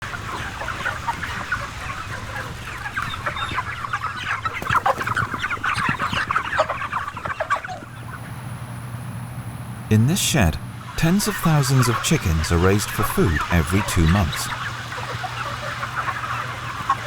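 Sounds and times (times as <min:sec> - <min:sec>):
flock of chickens clucking: 0:00.0 - 0:09.2, 0:11.4 - 0:17.0.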